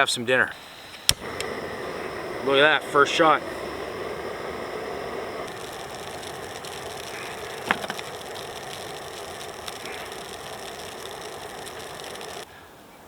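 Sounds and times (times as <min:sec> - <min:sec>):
gas stove burner hissing: 0:00.0 - 0:12.5.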